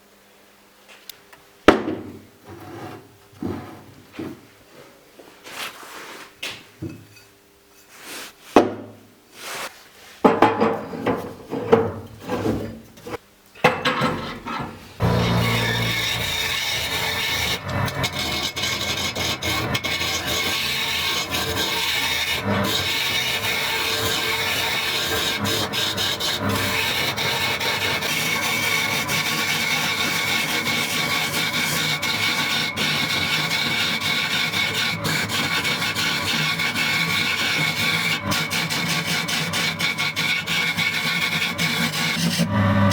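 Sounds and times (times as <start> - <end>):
wood being sanded: 15.0 - 42.9.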